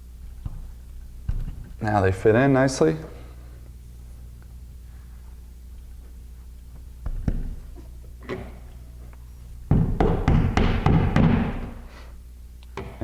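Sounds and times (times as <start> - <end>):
hammer tapping wall anchors: 9.7 - 11.8.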